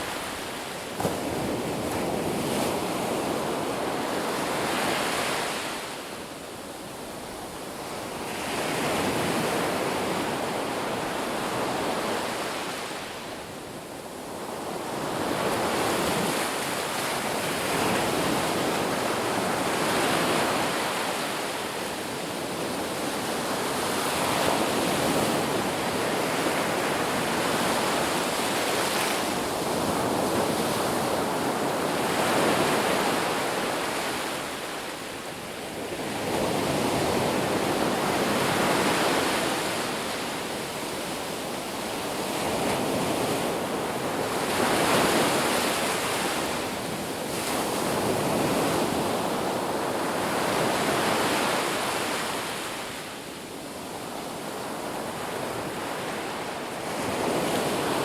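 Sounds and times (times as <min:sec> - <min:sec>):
waves breaking on beach: 0:00.0 - 0:58.0.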